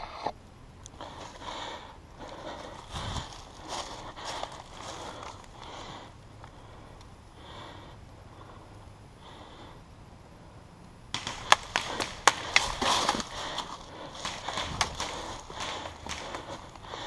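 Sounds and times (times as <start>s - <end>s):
person breathing and sniffing: 1.0s - 9.8s, 11.8s - 17.0s
footsteps crunching on dry brush: 2.2s - 6.0s, 11.2s - 17.0s.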